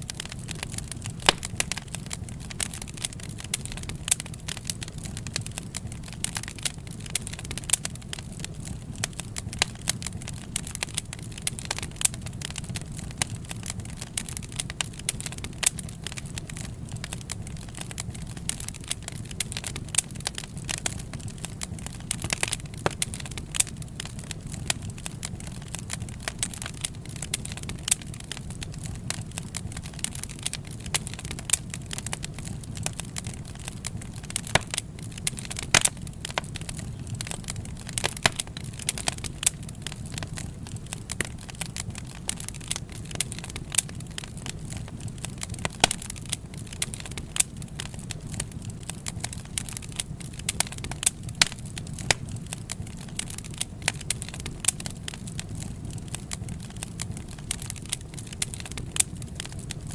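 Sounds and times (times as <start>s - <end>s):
fire popping and snapping: 0.0s - 59.9s
low rumble of burning: 0.0s - 59.9s
wood fire crackling: 0.0s - 59.9s.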